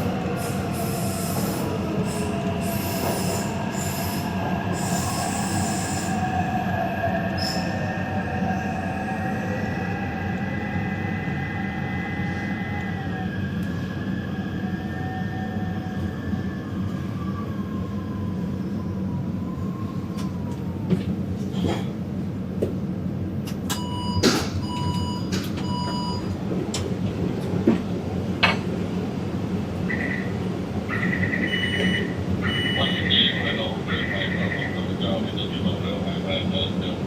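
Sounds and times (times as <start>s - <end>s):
train rumble with motor whine: 0.0s - 37.0s.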